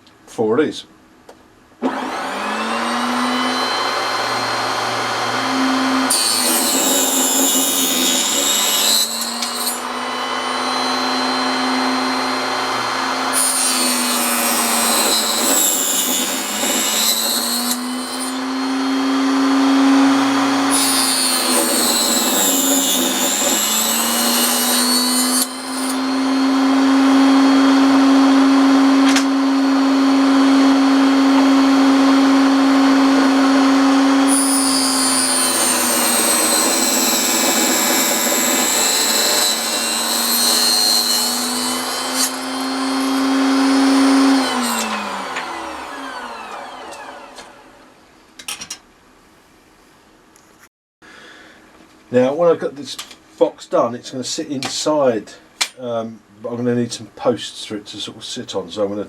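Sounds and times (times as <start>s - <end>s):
table saw motor hum: 1.8s - 48.0s
saw rasping through wood: 1.9s - 47.8s.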